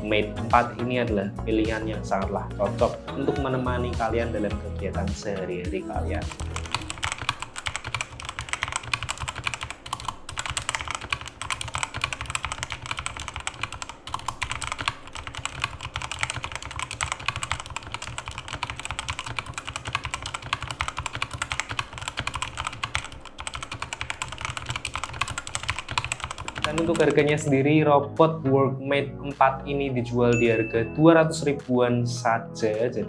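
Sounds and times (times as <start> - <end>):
mechanical keyboard typing: 5.2 - 27.5.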